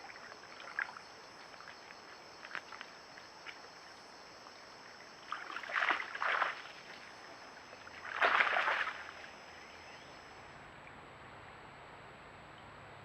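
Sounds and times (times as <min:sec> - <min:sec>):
water splashing in creek: 0:00.0 - 0:11.6
faint high whine: 0:03.9 - 0:10.8.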